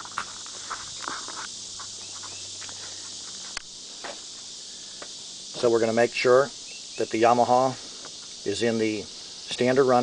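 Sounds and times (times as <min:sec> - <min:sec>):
insects chorus: 0:00.0 - 0:10.0.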